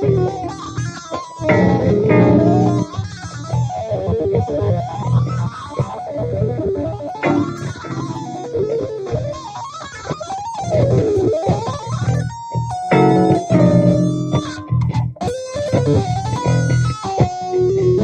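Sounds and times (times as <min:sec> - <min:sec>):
low bass backing: 0:00.0 - 0:04.0, 0:07.2 - 0:09.5, 0:12.0 - 0:15.2.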